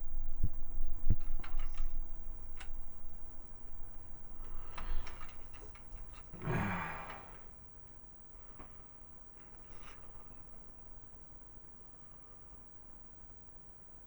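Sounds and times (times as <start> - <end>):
breathy sigh: 6.4 - 7.6.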